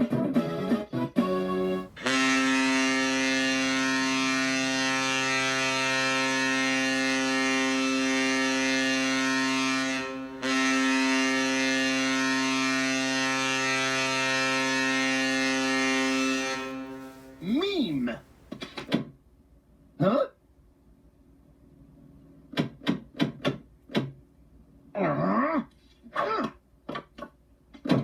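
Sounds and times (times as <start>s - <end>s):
deep goal horn blast: 1.6s - 18.8s.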